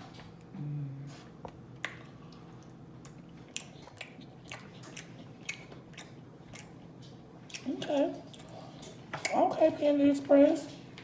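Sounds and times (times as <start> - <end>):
person humming: 0.5 - 1.3
person chewing with mouth smacks: 1.1 - 9.4.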